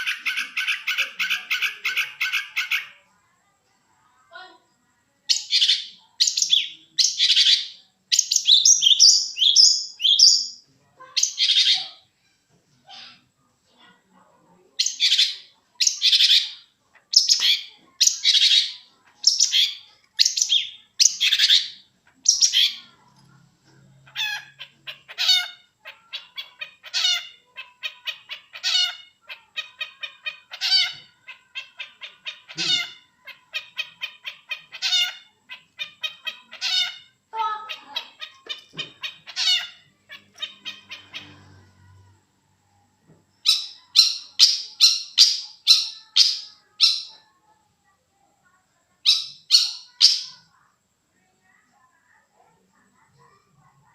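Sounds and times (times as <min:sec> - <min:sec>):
shrike chattering song: 0:05.3 - 0:12.0, 0:14.8 - 0:23.1, 0:43.3 - 0:47.3, 0:49.0 - 0:50.5.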